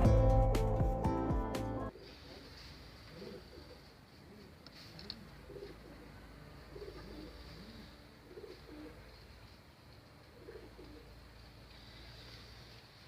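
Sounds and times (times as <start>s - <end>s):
pigeons cooing: 2.0s - 9.0s, 10.2s - 11.1s.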